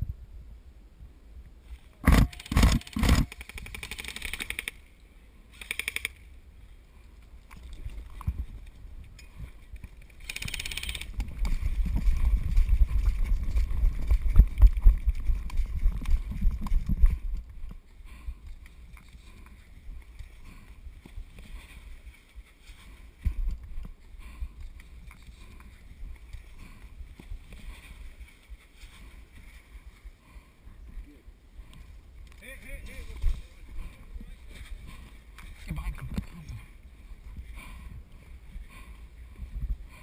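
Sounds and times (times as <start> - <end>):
airsoft rifle shots: 2.0 - 4.8.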